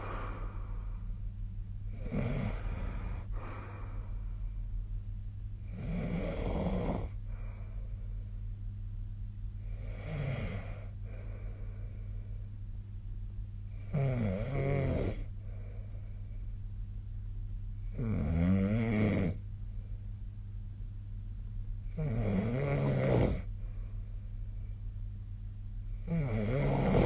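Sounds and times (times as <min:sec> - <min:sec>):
steady low hum: 0:00.0 - 0:27.0
person snoring: 0:01.9 - 0:04.0, 0:05.7 - 0:07.2, 0:09.7 - 0:11.0, 0:13.8 - 0:15.3, 0:17.9 - 0:19.4, 0:21.9 - 0:23.5, 0:26.0 - 0:27.0.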